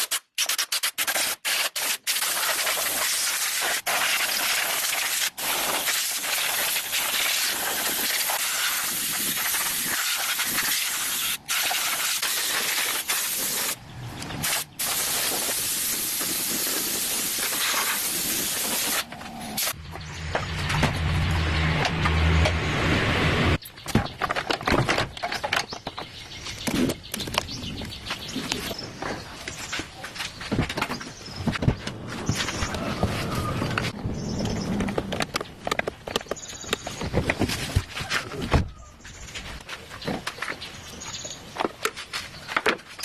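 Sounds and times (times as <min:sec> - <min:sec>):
pressurised spray hissing: 0:00.1 - 0:13.8, 0:14.4 - 0:19.8.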